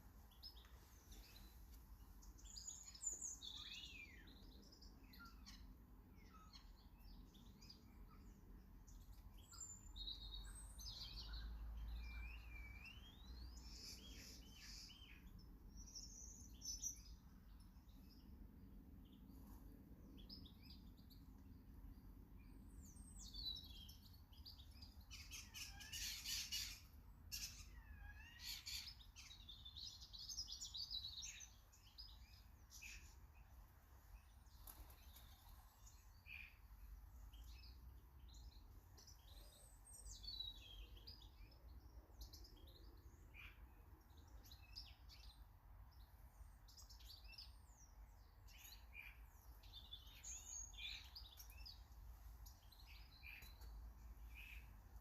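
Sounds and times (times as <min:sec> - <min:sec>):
birds chirping and singing: 0:22.4 - 0:33.4, 0:34.0 - 0:41.5, 0:46.5 - 0:55.0.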